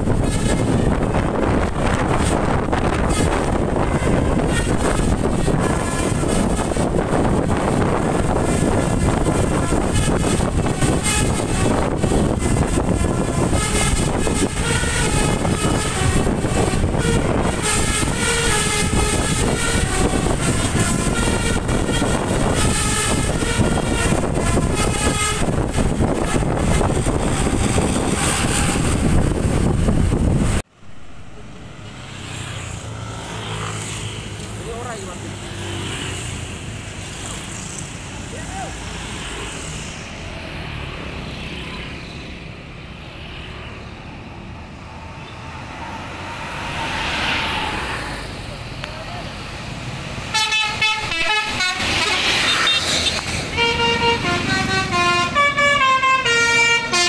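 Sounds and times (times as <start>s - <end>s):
multi-tone bus horn: 0.0s - 30.6s, 50.1s - 57.0s
vehicle passing: 0.0s - 56.9s
wind and road noise: 0.0s - 57.0s.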